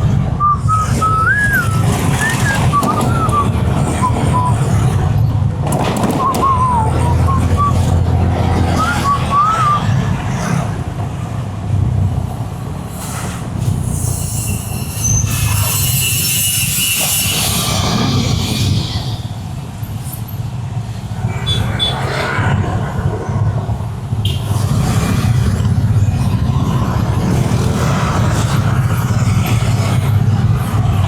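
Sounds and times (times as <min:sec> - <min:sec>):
road traffic rumble: 0:00.0 - 0:31.0
high-pitched squeal: 0:00.4 - 0:05.0, 0:06.1 - 0:10.0, 0:13.9 - 0:19.3.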